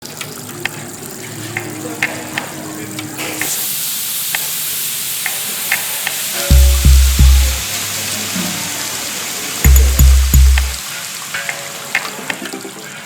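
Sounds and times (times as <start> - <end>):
food sizzling in a pan: 3.2 - 6.5, 10.8 - 12.2.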